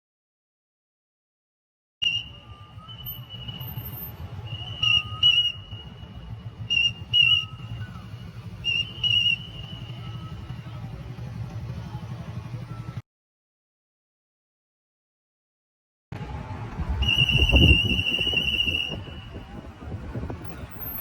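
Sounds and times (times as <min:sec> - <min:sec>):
held whistle tone: 0:02.0 - 0:10.6, 0:17.0 - 0:19.5
trilling whistle blasts: 0:02.0 - 0:10.6, 0:17.0 - 0:19.5.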